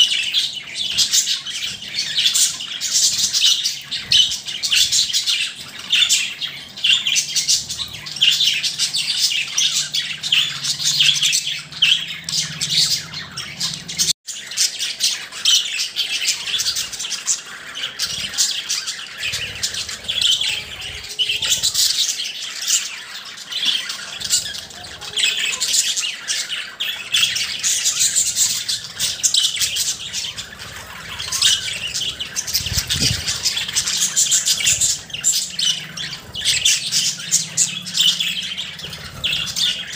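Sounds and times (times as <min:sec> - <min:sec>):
budgerigars chirping and warbling: 0:00.0 - 0:39.9.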